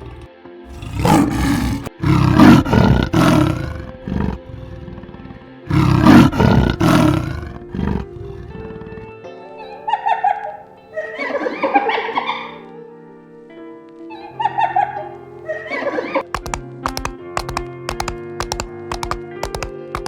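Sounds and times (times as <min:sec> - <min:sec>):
large animal roaring: 0:00.0 - 0:09.2
background music: 0:00.0 - 0:20.0.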